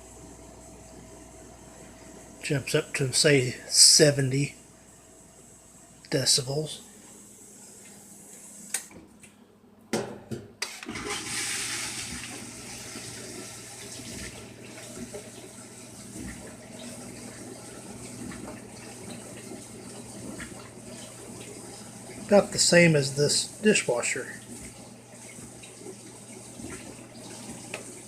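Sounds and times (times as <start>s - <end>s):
water rushing in dishwasher: 10.6s - 28.0s.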